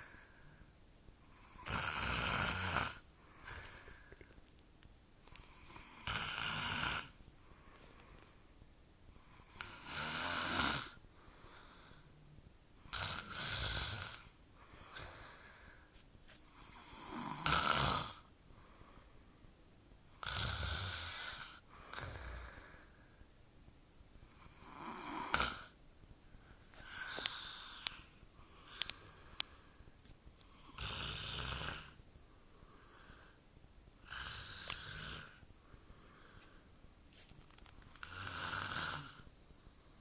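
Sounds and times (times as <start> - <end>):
quiet breathing: 0.0 - 40.0
man snoring: 1.3 - 3.8, 5.4 - 7.2, 9.2 - 11.0, 12.8 - 15.4, 16.5 - 18.3, 20.1 - 22.8, 24.3 - 25.8, 26.8 - 28.9, 30.5 - 32.0, 34.0 - 35.4, 37.9 - 39.3.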